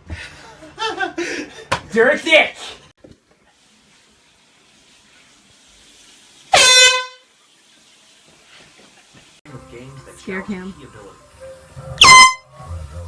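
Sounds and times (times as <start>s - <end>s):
air horn honk: 6.5s - 7.3s, 12.0s - 12.9s.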